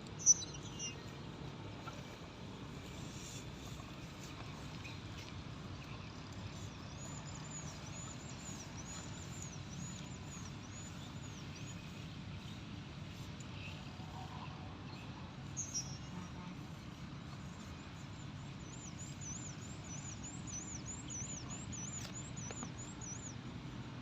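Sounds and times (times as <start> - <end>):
bird chirping: 0.1 - 1.2, 2.9 - 13.8, 17.6 - 23.4.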